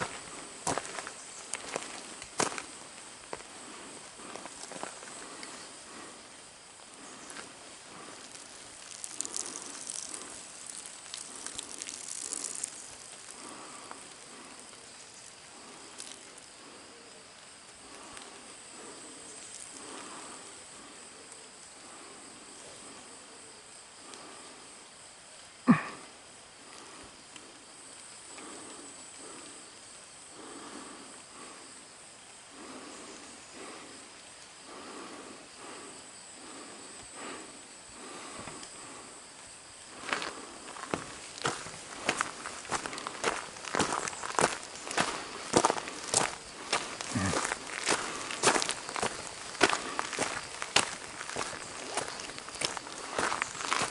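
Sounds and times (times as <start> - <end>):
soft footsteps on a trail: 0.0 - 25.9, 26.5 - 53.9
high insect trill: 0.0 - 53.9
steady hiss: 0.0 - 53.9.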